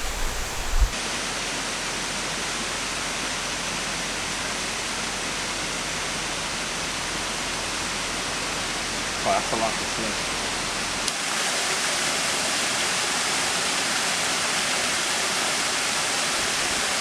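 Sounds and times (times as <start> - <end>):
low thumps: 0.0 - 1.0
waterfall rushing: 0.0 - 1.0.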